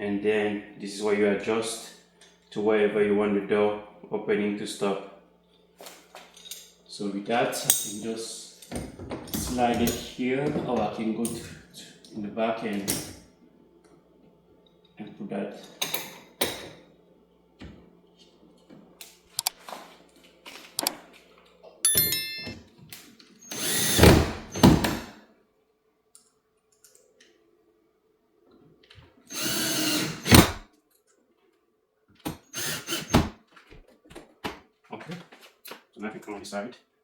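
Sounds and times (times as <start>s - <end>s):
power drill bursts: 23.4s - 25.1s, 29.3s - 30.6s, 32.4s - 33.4s.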